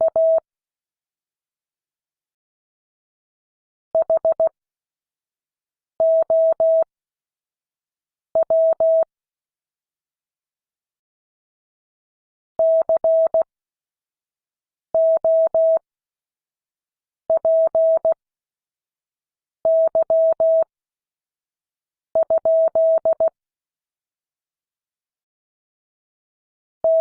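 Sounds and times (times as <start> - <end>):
morse code tone beeps: 15.0 - 15.8, 19.7 - 20.7, 22.2 - 23.3.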